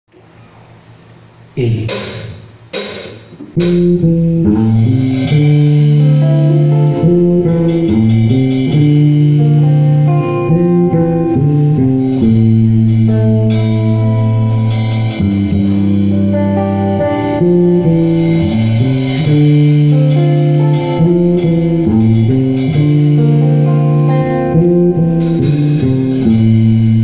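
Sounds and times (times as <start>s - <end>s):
electric bass and guitar: 0.1s - 27.0s
drum or cymbal hits: 1.9s - 9.5s, 25.2s - 27.0s.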